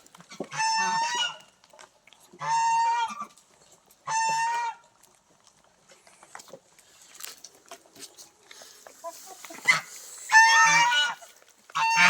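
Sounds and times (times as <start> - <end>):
poultry calling: 0.3 - 1.5, 9.0 - 12.0.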